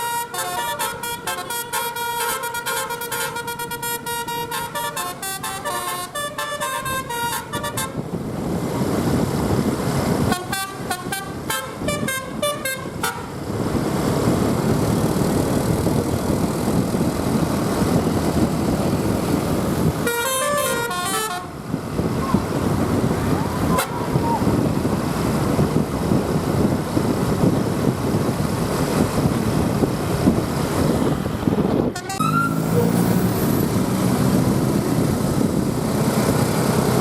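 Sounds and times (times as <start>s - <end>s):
musical bus horn melody: 0.0s - 8.2s, 10.2s - 13.4s, 20.0s - 21.6s, 23.7s - 24.1s, 31.9s - 33.0s
bus engine and road rumble: 0.0s - 37.0s.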